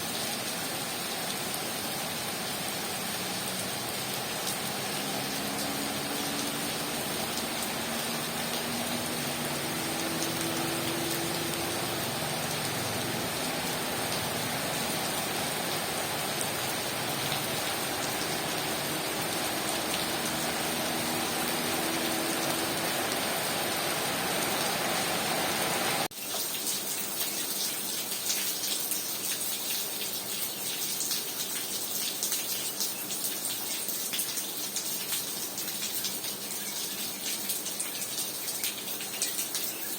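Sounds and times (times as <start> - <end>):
heavy rain hissing: 0.0 - 26.1
raindrops hitting a surface: 0.0 - 39.9.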